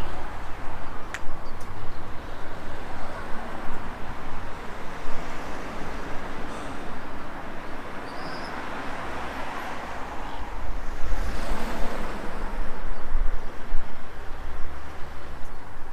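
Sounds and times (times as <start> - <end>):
wind rumbling on microphone: 10.2 - 15.9.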